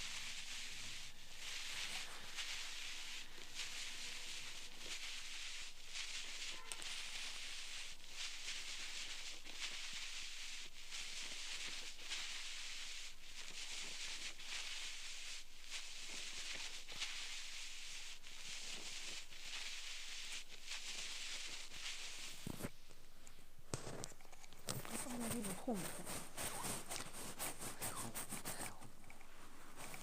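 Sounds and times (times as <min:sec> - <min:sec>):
ear pick scraping in ear: 0:23.7 - 0:30.0.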